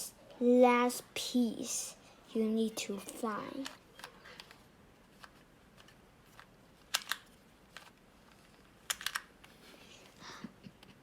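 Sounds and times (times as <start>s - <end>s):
puzzle cube plastic clicks: 5.2s - 9.5s.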